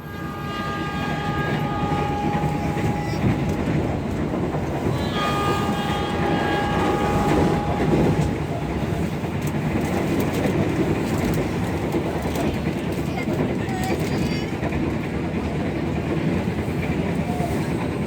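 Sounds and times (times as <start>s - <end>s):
train wheels rumbling on rails: 0.0s - 18.0s.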